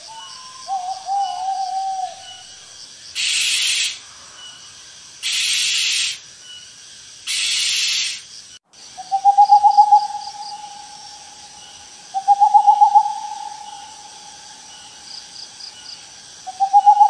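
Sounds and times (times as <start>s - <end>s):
owl hooting: 0.0s - 4.0s, 5.2s - 6.2s, 7.3s - 8.2s, 9.0s - 17.0s
owl hissing calls: 0.0s - 4.6s, 5.2s - 6.2s, 7.2s - 17.0s
insects chirring: 0.0s - 17.0s.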